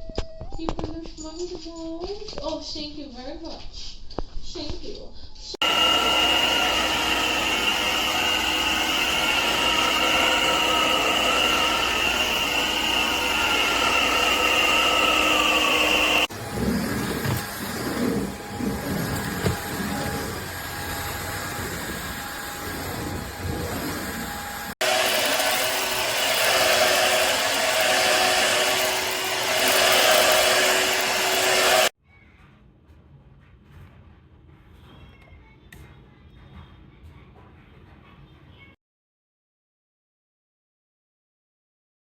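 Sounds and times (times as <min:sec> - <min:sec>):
stick vacuum motor running: 0:05.6 - 0:31.9.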